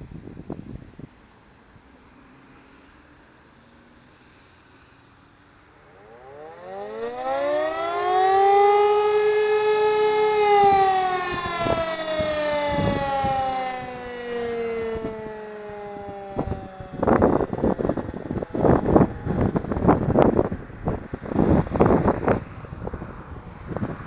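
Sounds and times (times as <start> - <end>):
distant motor sirens winding: 5.6 - 20.2.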